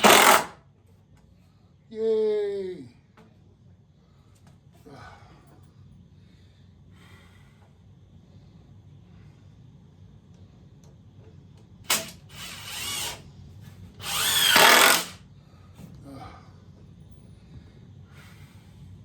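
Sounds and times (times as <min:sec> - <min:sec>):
power drill driving screws: 0:00.0 - 0:00.6, 0:11.9 - 0:13.2, 0:14.0 - 0:15.2.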